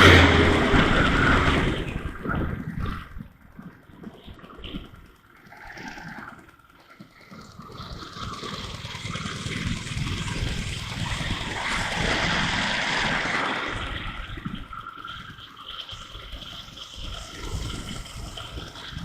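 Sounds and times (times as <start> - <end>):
wind rush: 0.0 - 3.7, 9.2 - 19.0
motorcycle engine: 0.0 - 19.0.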